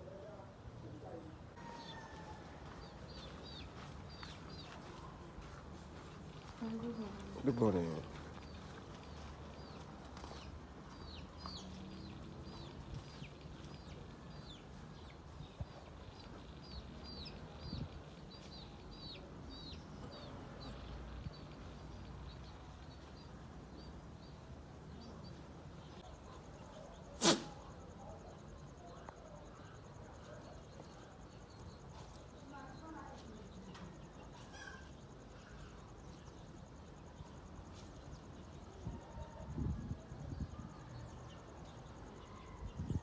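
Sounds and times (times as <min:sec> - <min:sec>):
birds chirping: 0:01.0 - 0:27.2.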